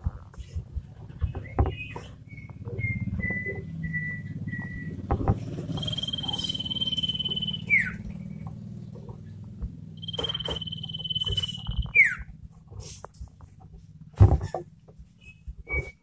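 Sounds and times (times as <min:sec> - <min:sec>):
bird whistling: 0:01.4 - 0:08.4, 0:09.9 - 0:12.3, 0:15.2 - 0:16.0.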